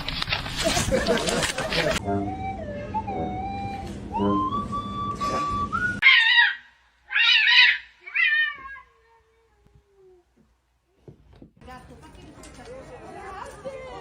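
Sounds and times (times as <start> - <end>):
cat meowing: 7.1 - 9.0.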